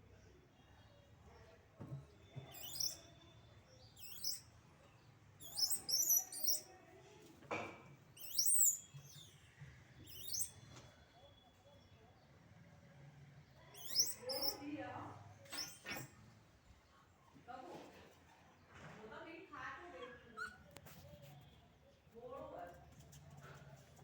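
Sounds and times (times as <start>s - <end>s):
high-pitched chirping animal calls: 2.5s - 3.2s, 3.9s - 4.6s, 5.4s - 6.7s, 8.2s - 9.4s, 10.1s - 10.8s, 13.7s - 14.8s, 15.5s - 16.1s.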